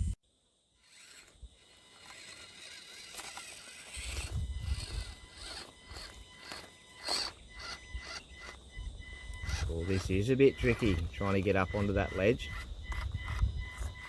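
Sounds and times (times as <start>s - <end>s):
small electric motor whirring: 0.7s - 14.0s
scrape on rock: 0.9s - 8.2s.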